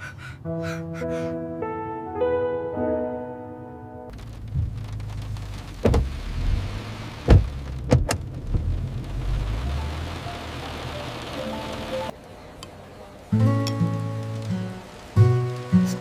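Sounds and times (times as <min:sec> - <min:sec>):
steady rain: 0:04.1 - 0:16.0.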